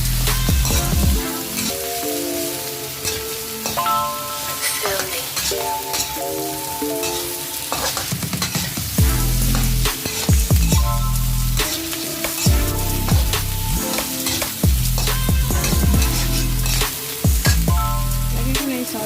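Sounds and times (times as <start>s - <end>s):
background music with melody: 0.0s - 19.0s
food sizzling in hot oil: 0.0s - 19.0s
stirring clicks and scrapes in pan: 7.0s - 18.2s.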